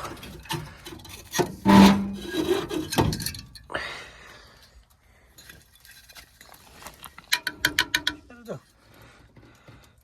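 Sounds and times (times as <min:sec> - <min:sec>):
metal scrape: 0:00.0 - 0:03.4
metal clinks and knocks: 0:00.0 - 0:03.7, 0:07.2 - 0:08.4.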